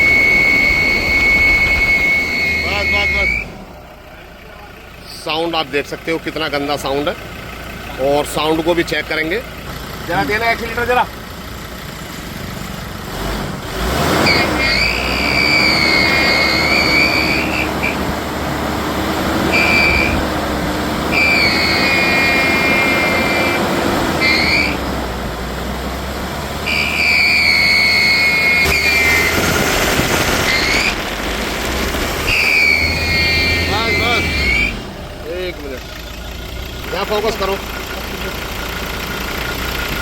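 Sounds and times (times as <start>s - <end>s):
high steady whine: 0.0s - 3.4s
diesel engine revving: 0.0s - 40.0s.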